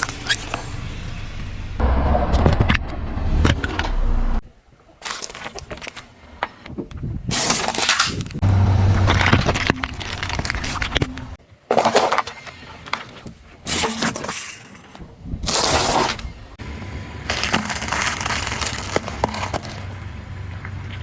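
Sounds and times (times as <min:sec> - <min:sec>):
car tyre crushing things: 0:07.3 - 0:14.6, 0:17.3 - 0:21.0.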